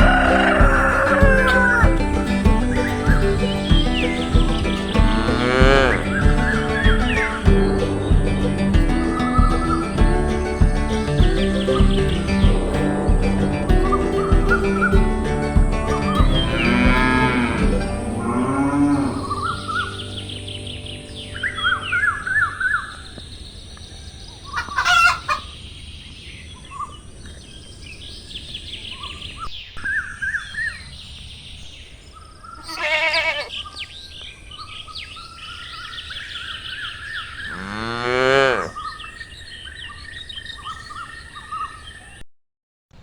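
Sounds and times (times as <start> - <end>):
cow mooing: 0.0 - 1.9, 5.0 - 6.5, 16.3 - 20.2, 37.5 - 38.8
chicken calling: 0.0 - 23.2, 24.4 - 25.6, 32.6 - 33.7, 37.5 - 39.0
small birds chirping: 0.0 - 42.2.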